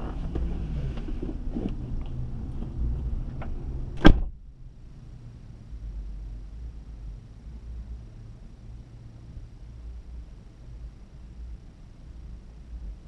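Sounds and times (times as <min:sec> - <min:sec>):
background noise: 0:00.0 - 0:13.0
car door slamming: 0:04.0 - 0:04.4.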